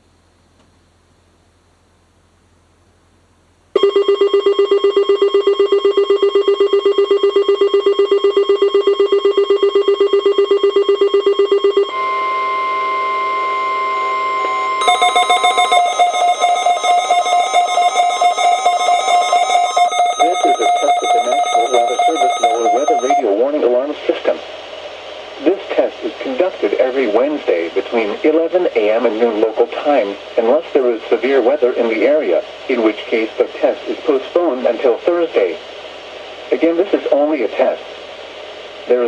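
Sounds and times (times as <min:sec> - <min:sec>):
pulsing electronic alarm: 0:03.8 - 0:23.3
steady single alarm tone: 0:03.8 - 0:23.3
person speaking: 0:14.8 - 0:23.4.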